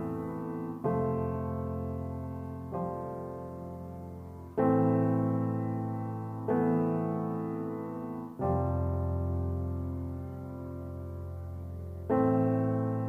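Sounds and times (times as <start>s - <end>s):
slow piano chords: 0.0s - 13.0s.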